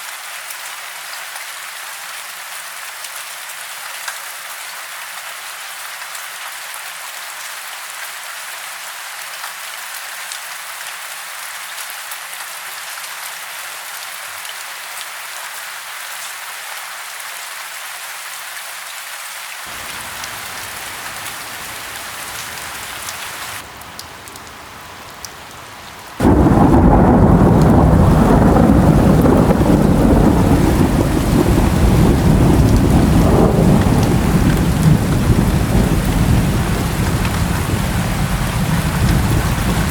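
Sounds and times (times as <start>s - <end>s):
heavy rain: 0.0s - 39.9s
steady rain hiss: 0.0s - 39.9s
deep rumble of thunder: 26.2s - 39.9s.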